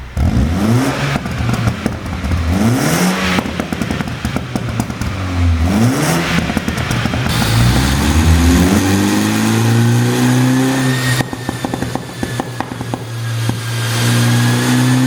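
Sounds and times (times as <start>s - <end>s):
exhaust pops and crackles: 0.0s - 9.2s, 11.2s - 13.6s
car engine revving: 0.0s - 15.0s.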